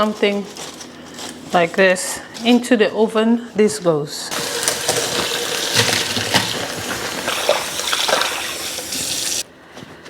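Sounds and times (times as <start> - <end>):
water running from tap: 4.3 - 9.4.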